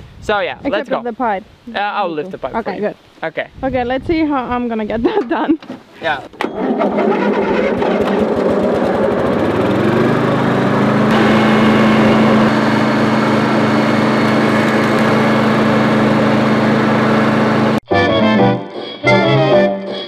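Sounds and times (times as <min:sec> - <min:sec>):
riding mower engine running: 0:06.4 - 0:17.8
mower blade spinning: 0:06.6 - 0:17.8.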